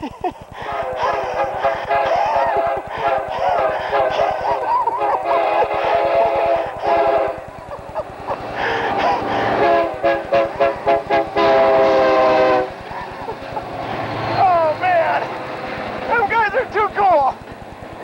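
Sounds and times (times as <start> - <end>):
locomotive air horn blasts: 0.6 - 4.4, 5.0 - 7.5, 9.3 - 12.8.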